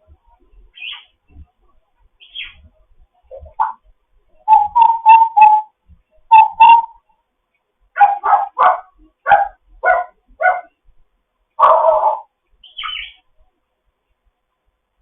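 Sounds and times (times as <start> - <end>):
parrot calls: 4.4 - 7.0, 11.6 - 13.2
parrot falling whistle: 4.5 - 5.7, 6.3 - 7.0.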